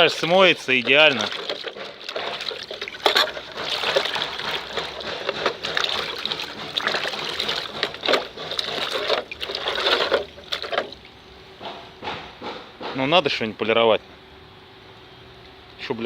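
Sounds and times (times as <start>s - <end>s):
water splashing over plastic panel: 0.0s - 11.1s.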